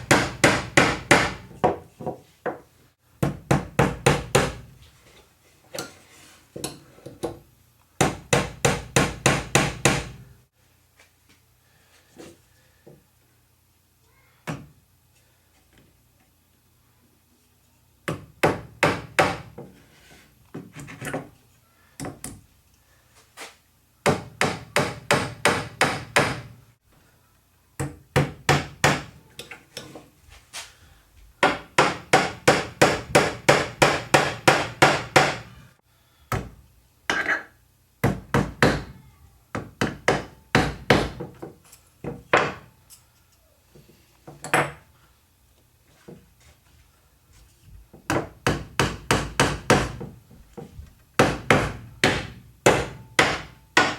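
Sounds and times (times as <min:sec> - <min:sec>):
hammer striking wood: 0:00.0 - 0:01.8, 0:03.2 - 0:04.6, 0:08.0 - 0:10.2, 0:18.1 - 0:19.6, 0:24.0 - 0:26.5, 0:27.8 - 0:29.1, 0:31.4 - 0:35.6, 0:38.0 - 0:39.0, 0:39.6 - 0:41.4, 0:42.0 - 0:42.7, 0:48.0 - 0:50.2, 0:51.2 - 0:53.9.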